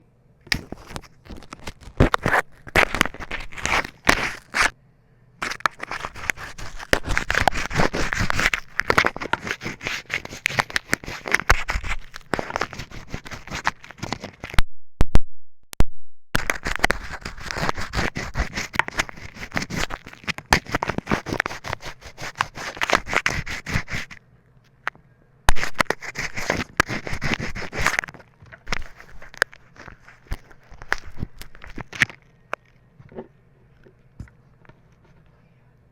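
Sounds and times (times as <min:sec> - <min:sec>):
crayons scraping on paper: 0:00.6 - 0:04.7, 0:05.4 - 0:14.6, 0:16.4 - 0:24.2, 0:25.5 - 0:32.2.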